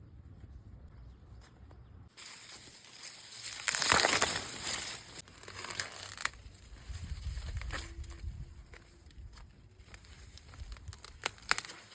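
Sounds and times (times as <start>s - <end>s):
corn leaves rustling: 2.1s - 11.9s.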